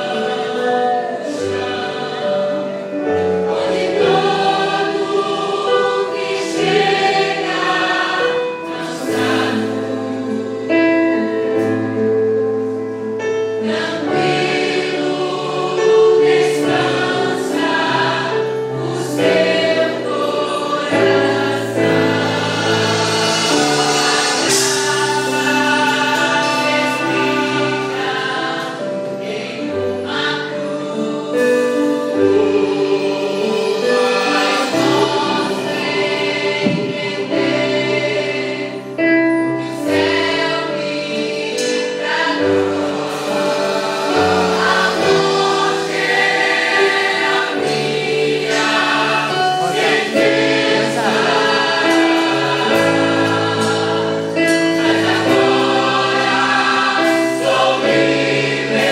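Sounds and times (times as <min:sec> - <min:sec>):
choir singing a hymn: 0:00.0 - 0:58.9
instrumental accompaniment with bass: 0:01.6 - 0:58.9.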